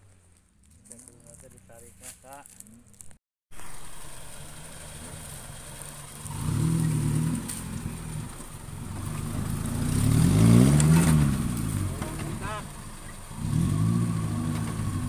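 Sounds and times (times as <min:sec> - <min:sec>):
vehicle engine revving: 0:03.5 - 0:15.0.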